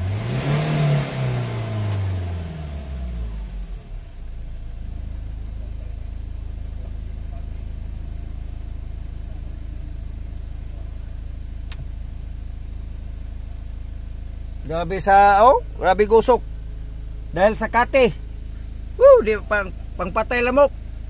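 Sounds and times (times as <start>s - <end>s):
diesel engine idling: 0.0s - 21.0s.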